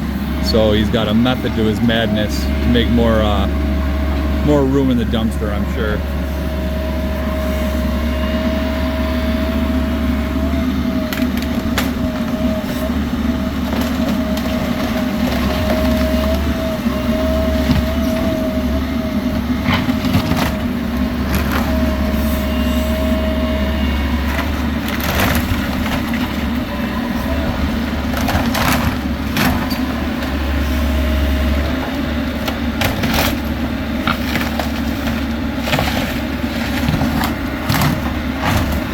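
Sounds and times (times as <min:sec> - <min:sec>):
excavator hydraulic whine: 0:00.0 - 0:38.9
wood cracking and splintering: 0:32.4 - 0:38.9.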